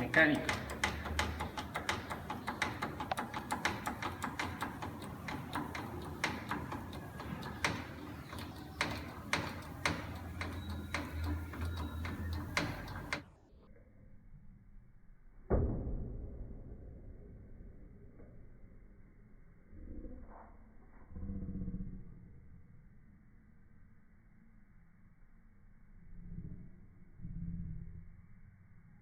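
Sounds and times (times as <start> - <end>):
car jack clicking: 0.0 - 13.3.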